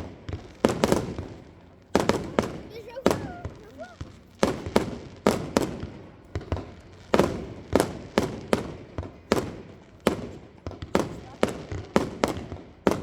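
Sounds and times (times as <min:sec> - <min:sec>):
fireworks bursting with echo: 0:00.0 - 0:13.0.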